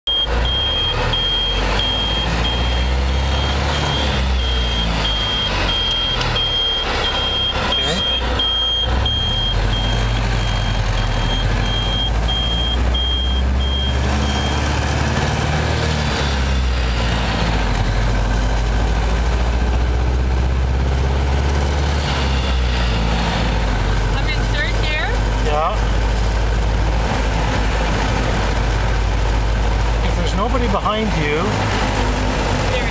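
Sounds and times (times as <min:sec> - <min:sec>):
high-pitched electronic beeps: 0:00.1 - 0:14.6
car engine and road drone: 0:00.1 - 0:32.9.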